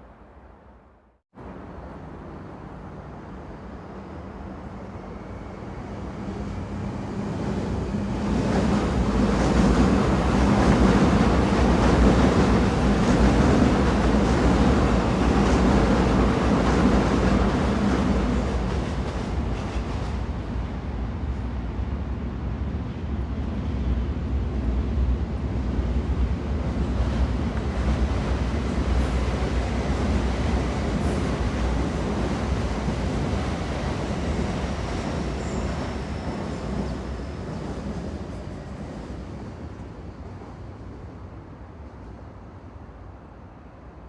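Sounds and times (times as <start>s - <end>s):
train rumbling on rails: 1.4s - 44.0s.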